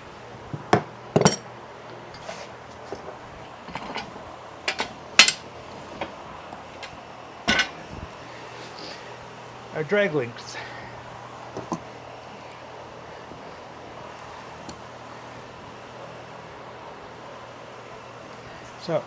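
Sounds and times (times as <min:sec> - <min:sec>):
metal tools clinking: 0:03.7 - 0:06.1.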